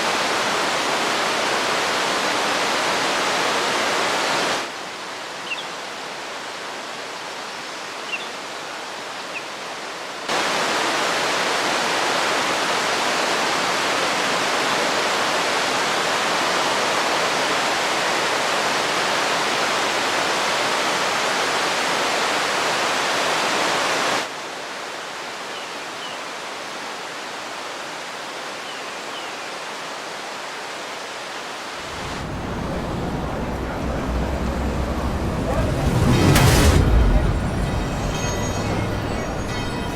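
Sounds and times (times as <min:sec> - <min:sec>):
low rumble: 0:31.8 - 0:39.9.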